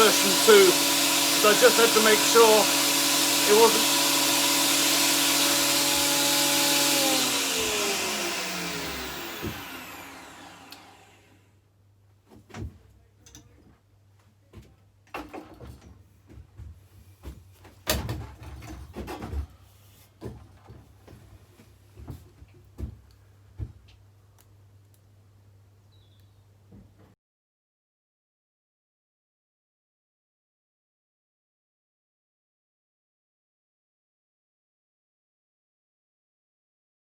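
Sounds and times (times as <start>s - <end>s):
power tool motor spinning down: 0.0s - 11.4s.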